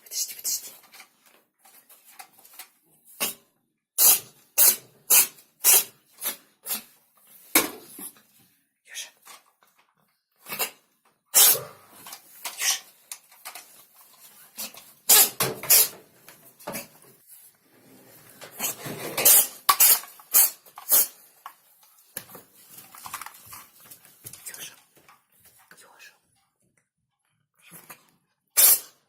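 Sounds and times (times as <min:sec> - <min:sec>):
kitten sneezing: 0:10.5 - 0:11.8, 0:28.6 - 0:29.0.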